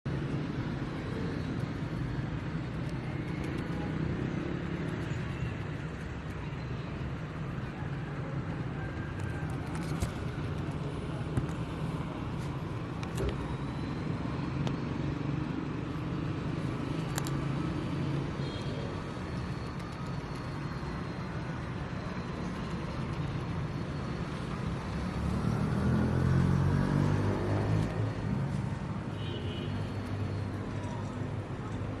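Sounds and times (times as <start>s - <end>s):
traffic rumble: 0.1s - 32.0s
vehicle passing close: 24.9s - 28.6s.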